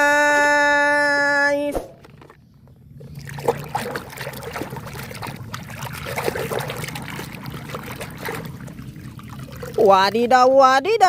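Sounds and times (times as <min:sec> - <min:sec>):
water running and splashing: 0:03.0 - 0:10.2.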